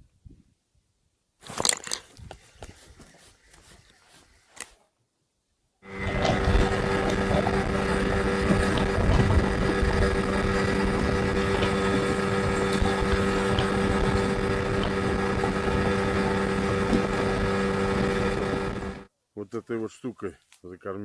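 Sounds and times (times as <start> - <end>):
outboard motor running: 5.8 - 19.1
rushing wind: 5.9 - 19.0.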